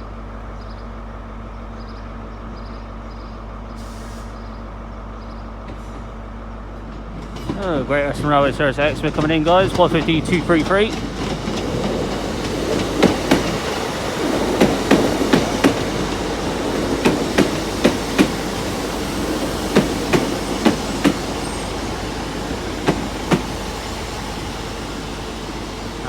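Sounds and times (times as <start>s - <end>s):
train rumble: 0.0s - 26.0s
train wheels clicking over rail joints: 5.3s - 26.0s.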